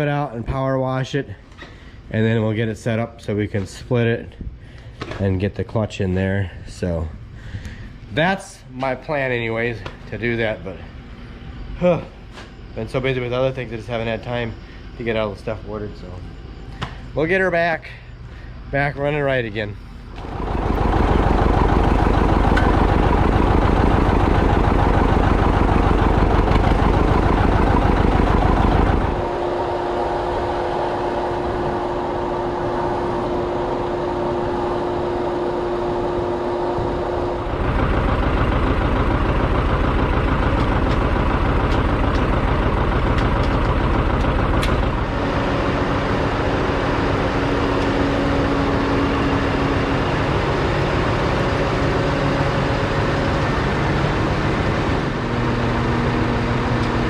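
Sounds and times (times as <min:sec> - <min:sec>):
steady hum or whine: 0:00.0 - 0:57.0
tractor engine running: 0:20.1 - 0:57.0.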